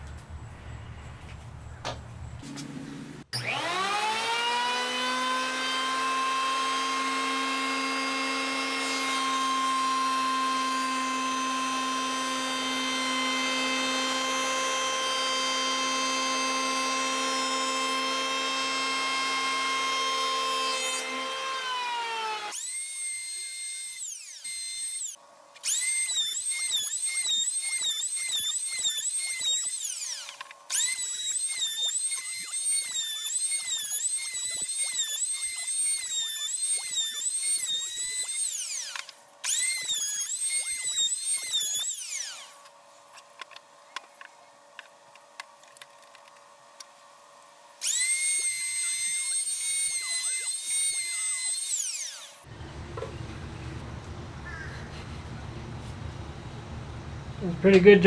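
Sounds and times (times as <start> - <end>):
electric hand planer motor whine: 2.5 - 44.2, 47.8 - 58.0.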